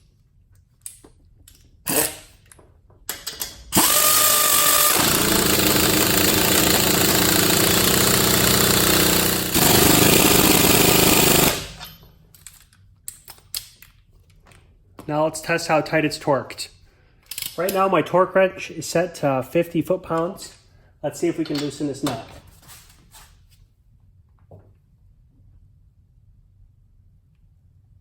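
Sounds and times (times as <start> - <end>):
pneumatic impact ratchet hammering: 1.9 - 2.4, 3.1 - 12.0.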